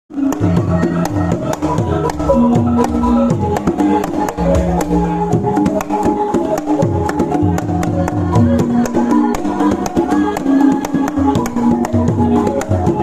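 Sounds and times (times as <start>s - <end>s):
melodic pitched percussion music: 0.1s - 13.0s
hand drum sharp strokes: 0.3s - 7.7s.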